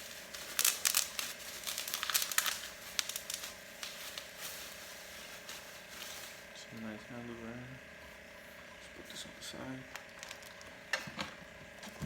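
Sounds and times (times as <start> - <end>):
plastic packaging crinkling: 0.0 - 6.6, 10.0 - 10.7.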